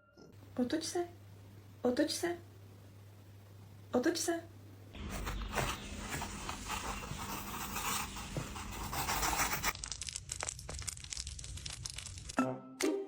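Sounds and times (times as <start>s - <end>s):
paper rustling and crinkling: 5.0s - 12.4s
music: 12.4s - 13.0s.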